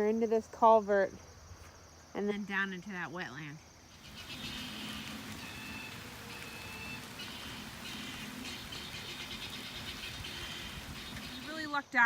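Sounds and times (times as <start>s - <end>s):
high pulsing trill of frogs or insects: 0.0s - 11.9s
steady rain: 3.9s - 11.7s.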